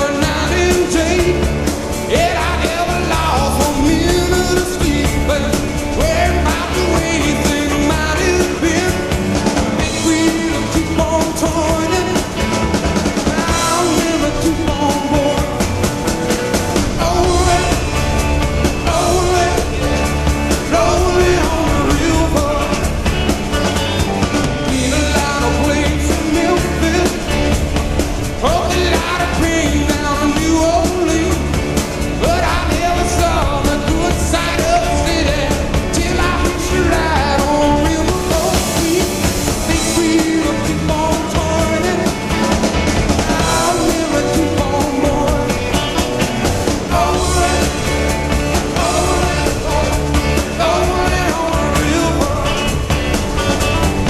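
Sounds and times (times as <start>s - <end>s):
rock song with lead vocal: 0.0s - 54.0s.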